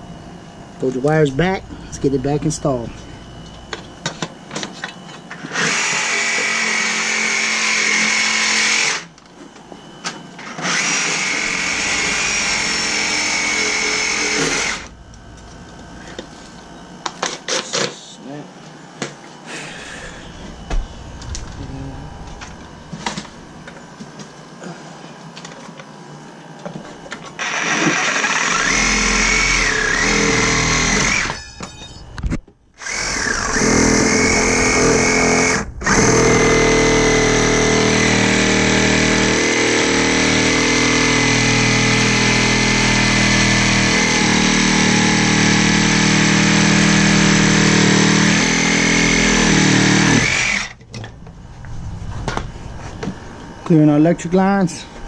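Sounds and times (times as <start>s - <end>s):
power tool motor whining: 5.3s - 9.2s, 10.4s - 15.0s, 27.2s - 31.4s, 32.8s - 50.8s.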